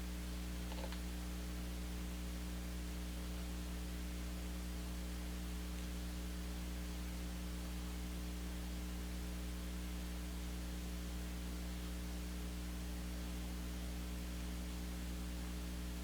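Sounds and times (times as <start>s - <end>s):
electrical mains hum: 0.0s - 16.0s.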